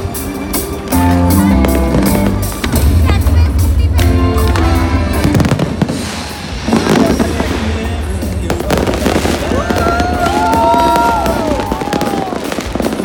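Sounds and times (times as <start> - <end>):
background music with low beat: 0.0 - 13.0
fireworks bursting and crackling: 0.0 - 13.0
fireworks whistles gliding in pitch: 4.6 - 13.0.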